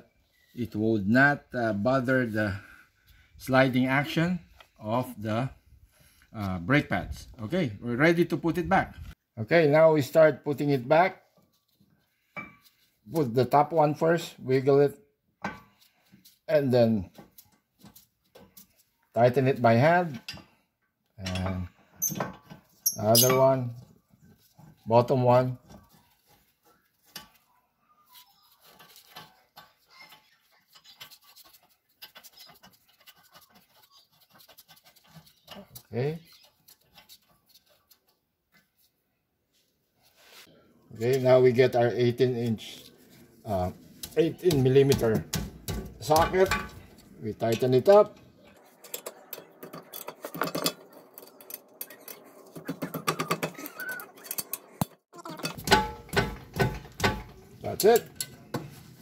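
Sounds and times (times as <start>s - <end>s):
faint metallic clicks and scratches: 25.6s - 27.5s, 28.1s - 38.9s, 43.8s - 59.0s.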